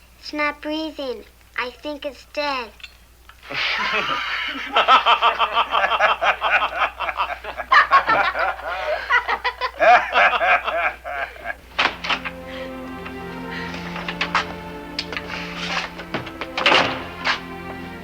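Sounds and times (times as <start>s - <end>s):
people laughing: 3.4s - 18.0s
music: 11.5s - 18.0s
sharp knocks: 13.9s - 17.5s.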